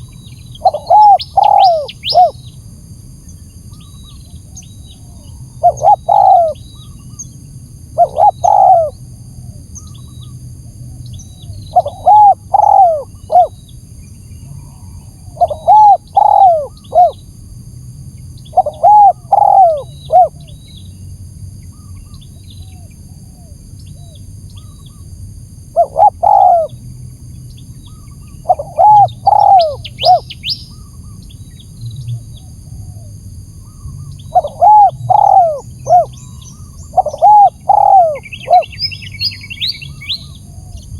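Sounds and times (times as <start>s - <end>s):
dove cooing: 0.0s - 2.4s, 5.0s - 7.1s, 8.0s - 9.9s, 11.4s - 13.6s, 14.5s - 17.2s, 18.5s - 20.6s, 25.7s - 26.8s, 27.9s - 31.2s, 32.7s - 40.9s.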